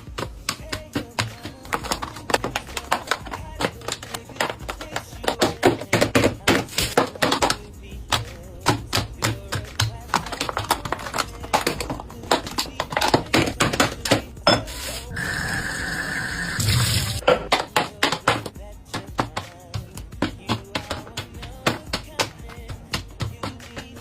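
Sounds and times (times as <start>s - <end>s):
plastic containers clicking and knocking: 0.0s - 14.7s, 17.2s - 24.0s
water running from a tap: 15.1s - 17.2s.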